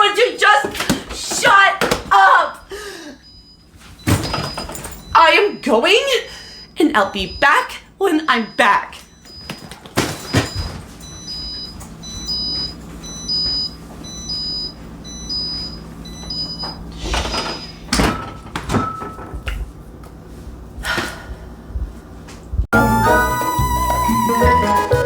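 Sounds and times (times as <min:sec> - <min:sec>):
electronic beeper short high beeps: 0:22.7 - 0:25.0.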